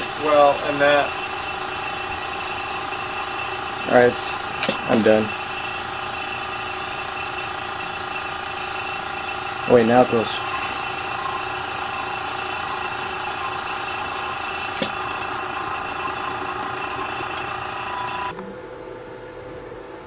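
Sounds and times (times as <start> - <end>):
machinery hiss and hum: 0.0 - 15.0.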